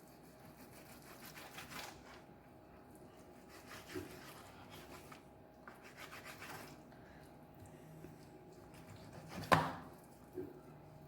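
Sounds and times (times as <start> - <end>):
knife cutting on cutting board: 3.5 - 6.8.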